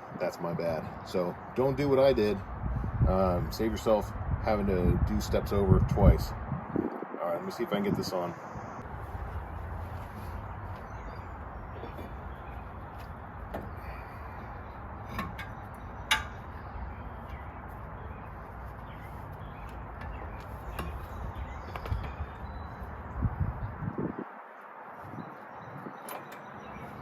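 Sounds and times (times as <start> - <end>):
sharp metal knocks and clicks: 15.0 - 16.6.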